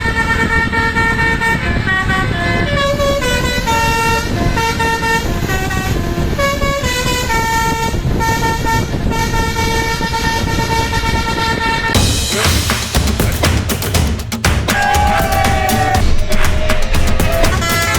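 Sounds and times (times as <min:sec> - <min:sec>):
multi-tone air horn tune: 0:00.0 - 0:12.8, 0:17.4 - 0:17.9.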